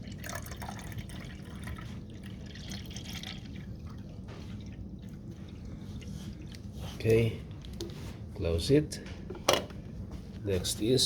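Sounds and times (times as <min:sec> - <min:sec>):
water pouring into a tank: 0:00.0 - 0:06.2.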